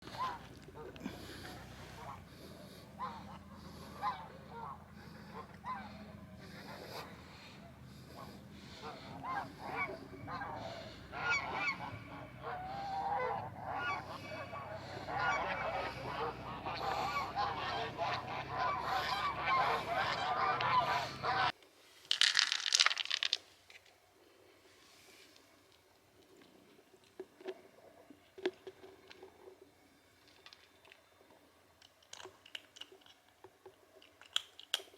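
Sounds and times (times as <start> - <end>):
animals honking in chorus: 9.2 - 21.5
loud crackling rustle: 22.0 - 23.5.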